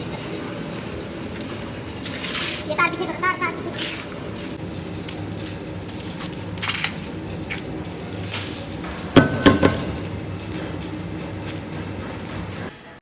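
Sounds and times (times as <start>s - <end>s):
workshop machine hum: 0.0s - 13.0s
metal-on-metal strikes: 9.2s - 10.2s.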